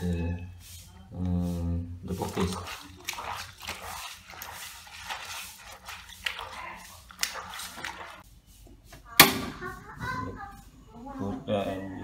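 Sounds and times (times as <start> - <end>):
water splashing in a bucket: 2.0 - 8.2.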